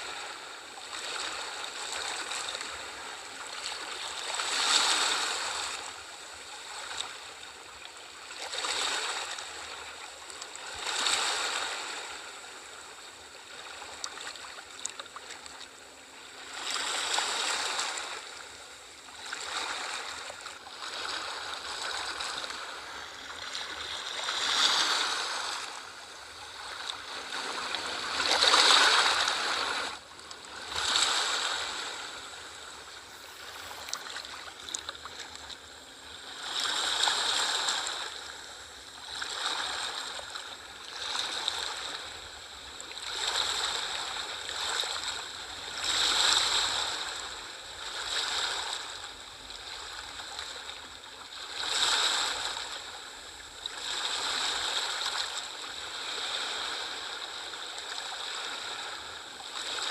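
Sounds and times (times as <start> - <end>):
sea waves washing in: 19.3 - 40.2.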